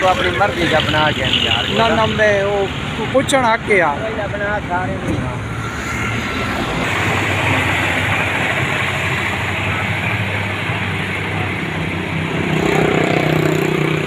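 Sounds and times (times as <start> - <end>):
heavy machinery engines running: 4.6 - 14.0.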